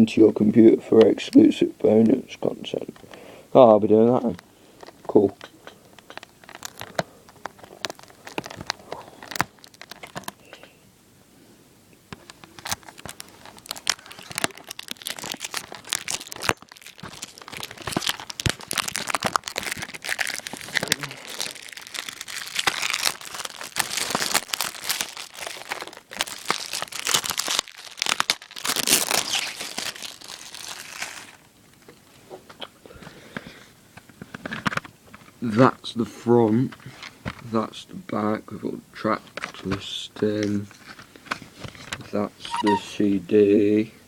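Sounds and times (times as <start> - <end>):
plastic wrap tearing and crinkling: 6.0 - 10.5, 12.1 - 31.5.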